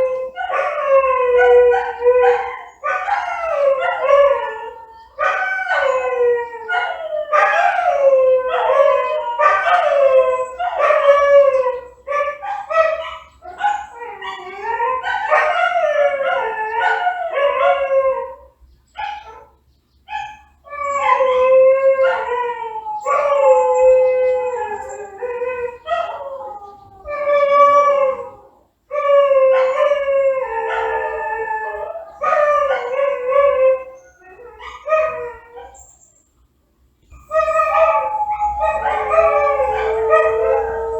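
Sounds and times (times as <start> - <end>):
dog howling: 0.0 - 18.4, 20.2 - 35.8, 37.1 - 40.9
dog yipping: 1.4 - 4.1, 12.1 - 17.8, 37.1 - 40.9.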